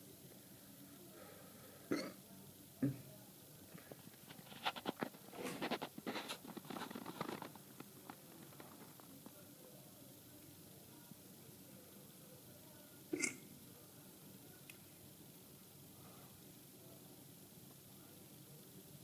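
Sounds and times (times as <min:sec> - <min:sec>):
person hiccuping: 0:01.9 - 0:02.2, 0:13.1 - 0:13.4.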